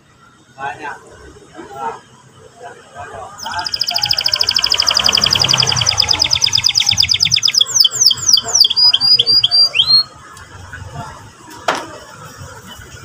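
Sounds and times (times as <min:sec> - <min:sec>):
canary singing: 0:03.4 - 0:10.2.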